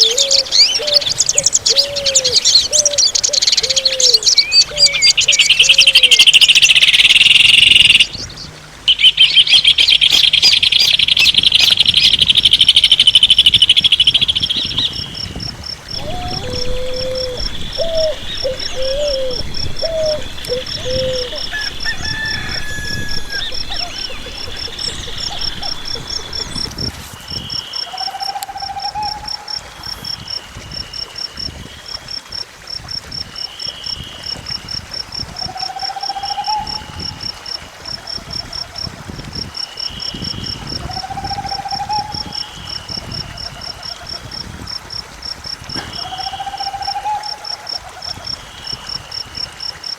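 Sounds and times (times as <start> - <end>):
birds calling: 0.0 - 29.2
crickets chirping: 0.0 - 49.9
chicken calling: 15.9 - 26.8.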